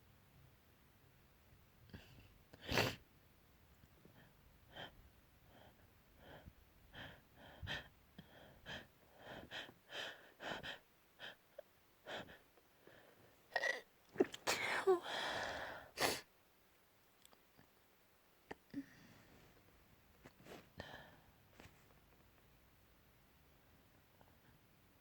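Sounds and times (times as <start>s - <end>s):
person sneezing: 13.6s - 15.1s.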